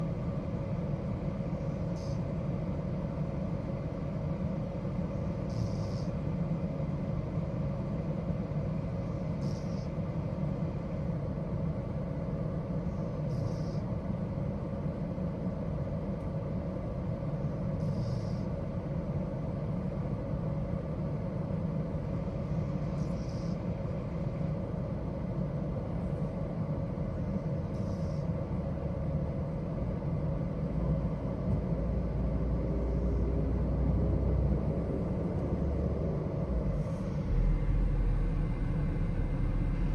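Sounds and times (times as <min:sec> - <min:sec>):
steady low rumble: 0:00.0 - 0:39.9.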